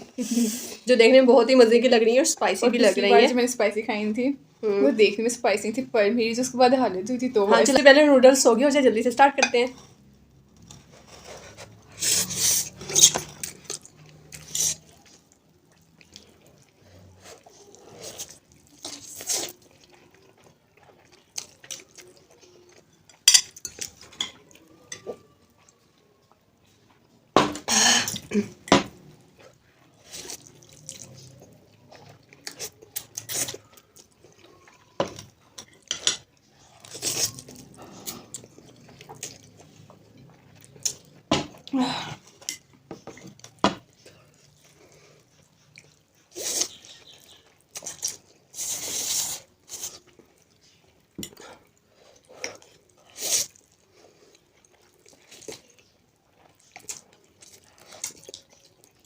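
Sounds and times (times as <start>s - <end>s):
people slurping noodles: 11.6s - 13.5s, 48.5s - 50.1s.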